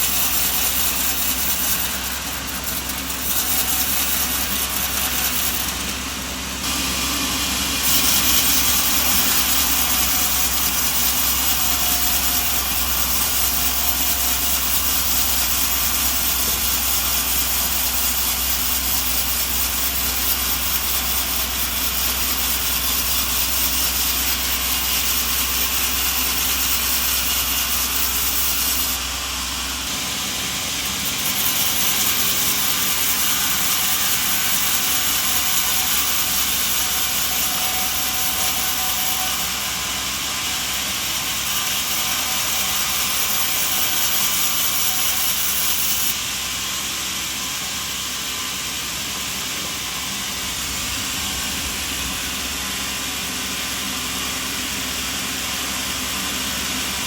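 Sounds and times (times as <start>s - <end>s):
motor hum: 48.8s - 55.6s.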